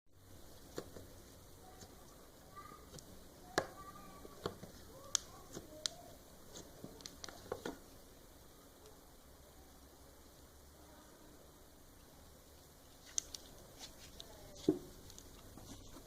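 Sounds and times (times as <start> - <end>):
sharp clicks and pops: 2.9 - 7.9, 13.0 - 16.0
slime squished by hand: 12.8 - 16.0.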